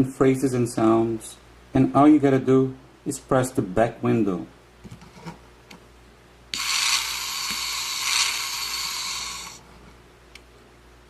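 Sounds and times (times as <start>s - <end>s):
toy car hissing blast: 6.5s - 9.6s.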